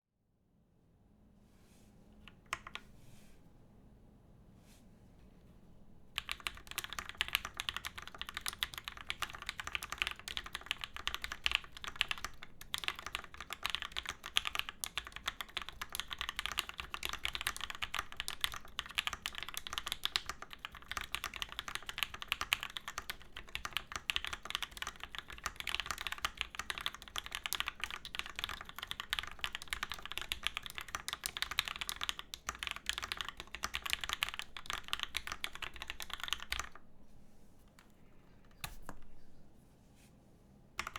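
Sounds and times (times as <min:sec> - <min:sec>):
mechanical keyboard typing: 0:02.3 - 0:02.8, 0:06.2 - 0:36.8.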